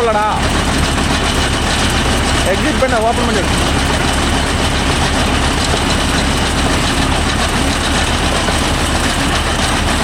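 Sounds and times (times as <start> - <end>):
tractor diesel engine droning: 0.0 - 10.0.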